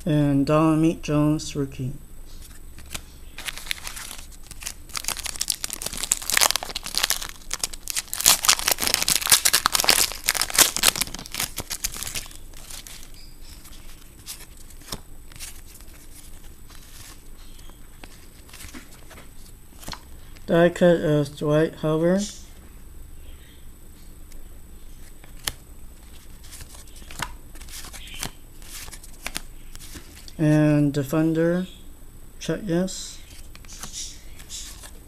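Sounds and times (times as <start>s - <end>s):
cards rustling and clicking: 2.4s - 20.5s, 25.0s - 30.4s, 33.3s - 35.0s
wrapper tearing and crinkling: 2.8s - 17.2s.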